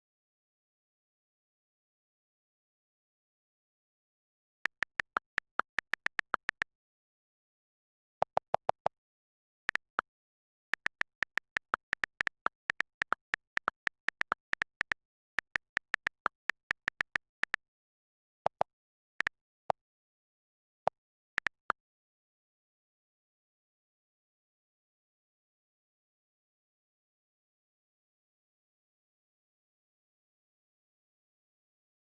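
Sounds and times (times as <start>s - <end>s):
rapid short clicks: 4.7s - 6.7s, 10.8s - 17.6s.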